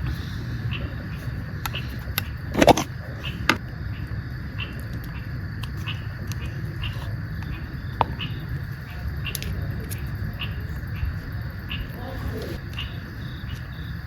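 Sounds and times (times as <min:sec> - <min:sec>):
insect chirps: 0:00.0 - 0:14.0
steady low rumble: 0:00.0 - 0:14.0.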